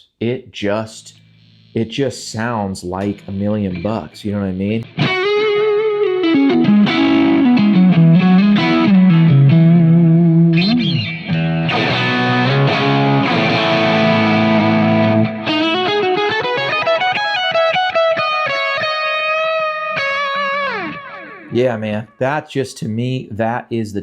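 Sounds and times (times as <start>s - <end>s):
overdriven electric guitar: 1.0s - 1.9s, 4.8s - 21.6s.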